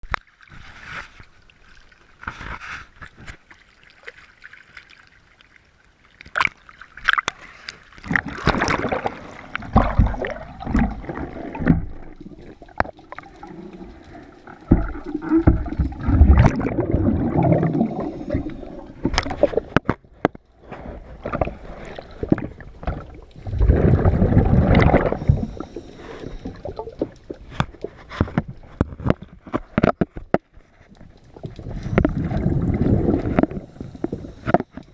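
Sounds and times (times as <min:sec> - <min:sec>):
underwater bubbles gurgling: 0:08.0 - 0:30.0, 0:30.9 - 0:34.9.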